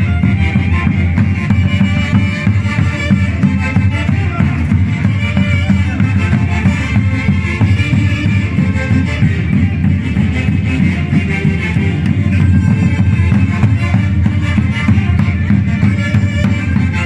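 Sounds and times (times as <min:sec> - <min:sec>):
music with drums and bass: 0:00.0 - 0:17.0.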